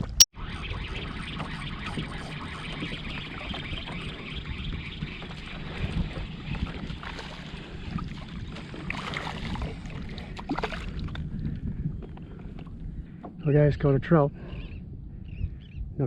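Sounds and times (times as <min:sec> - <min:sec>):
wind noise: 0:00.0 - 0:16.0
water noise: 0:01.0 - 0:13.3.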